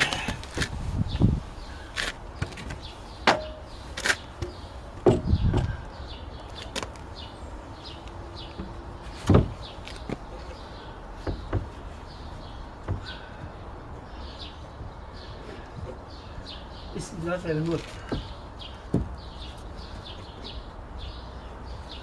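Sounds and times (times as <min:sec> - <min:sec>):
faint birds chirping: 0:00.0 - 0:22.0
knocks and clunks on wood: 0:02.0 - 0:05.9, 0:08.5 - 0:14.1, 0:17.8 - 0:19.6.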